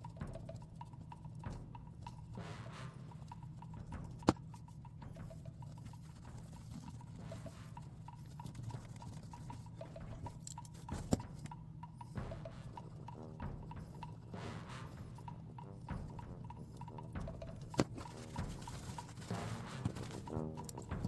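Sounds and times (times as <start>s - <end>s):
low steady hum: 0.0s - 21.0s
taps and clicks handling toy car: 3.3s - 12.2s.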